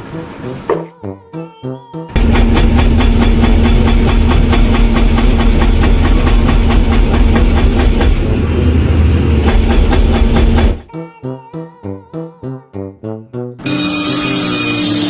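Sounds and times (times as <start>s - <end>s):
machine humming and clattering: 2.2s - 10.9s.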